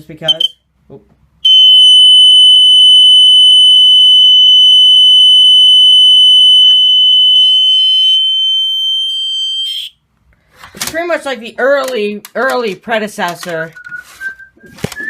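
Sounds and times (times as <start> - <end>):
smoke alarm high-pitched tone: 0.3 - 0.6, 1.4 - 10.0.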